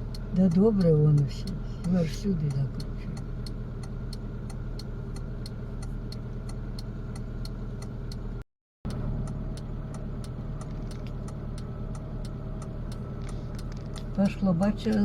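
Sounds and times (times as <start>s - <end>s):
car engine idling: 0.0s - 15.0s
indicator relay ticking: 0.0s - 15.0s.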